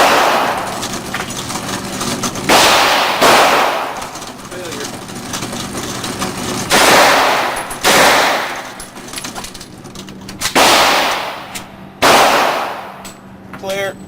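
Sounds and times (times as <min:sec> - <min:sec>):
gunshots with echo: 0:00.0 - 0:05.0, 0:05.8 - 0:09.0, 0:10.4 - 0:13.1.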